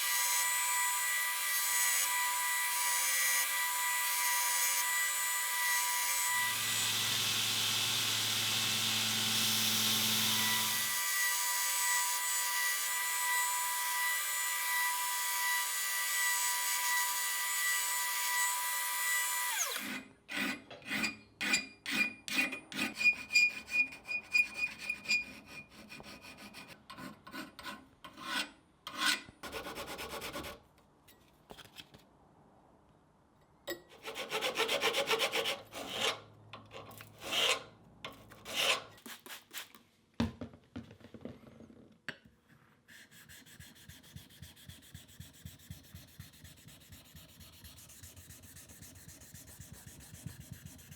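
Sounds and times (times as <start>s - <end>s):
hand file scraping steel: 19.5s - 30.6s, 33.9s - 39.8s, 42.8s - 50.9s.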